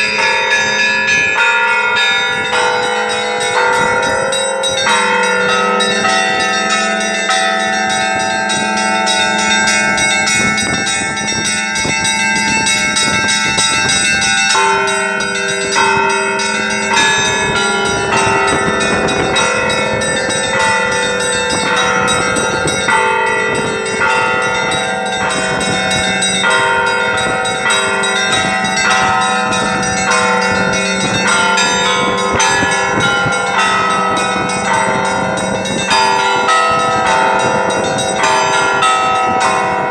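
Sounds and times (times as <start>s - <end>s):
church bells pealing: 0.0s - 39.9s
low hum of large bell: 0.0s - 39.9s.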